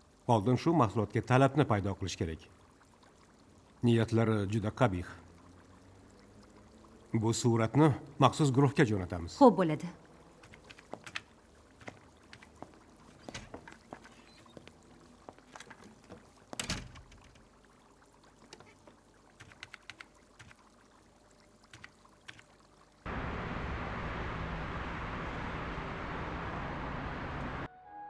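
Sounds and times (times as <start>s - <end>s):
light clicks and taps: 10.4s - 17.5s, 21.6s - 22.6s.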